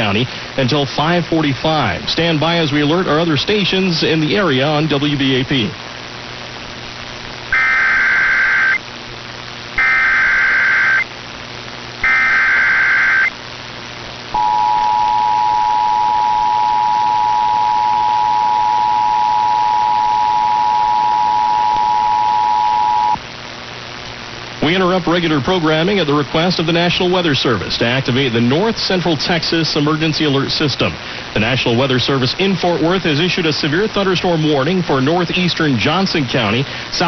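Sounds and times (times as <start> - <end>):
digital data tone bursts: 7.5 - 8.8, 9.8 - 11.1, 12.0 - 13.3
two-tone attention signal: 14.4 - 23.2.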